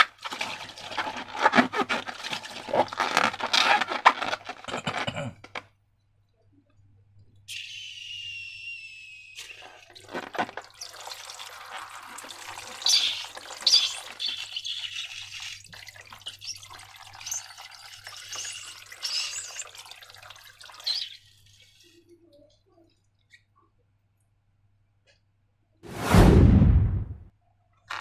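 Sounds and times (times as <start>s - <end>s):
low thump: 26.0s - 27.3s.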